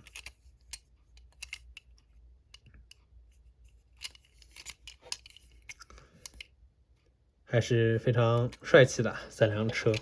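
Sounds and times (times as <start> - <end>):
plastic toy cars clicking: 0.0 - 3.0, 3.9 - 6.5.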